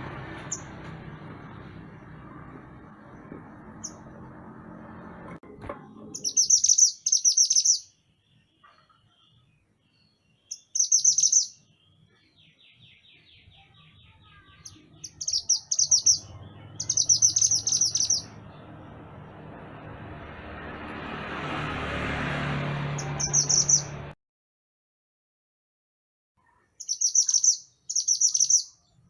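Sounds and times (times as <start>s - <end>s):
songbird trilling: 6.2s - 7.9s, 10.4s - 18.4s, 23.0s - 23.9s, 26.8s - 28.9s
fainter bird trill: 6.2s - 18.4s, 26.4s - 29.0s.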